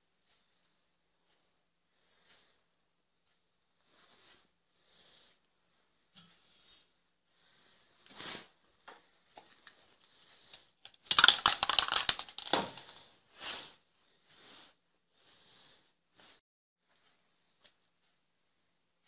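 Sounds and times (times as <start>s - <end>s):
clicks and scrapes of handling: 8.1s - 13.1s.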